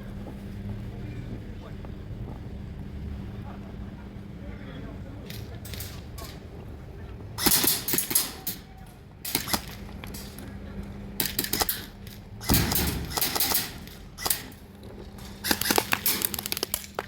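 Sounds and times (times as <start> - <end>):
airsoft guns firing: 7.4 - 8.6, 9.3 - 9.9, 12.4 - 14.6, 15.4 - 17.0.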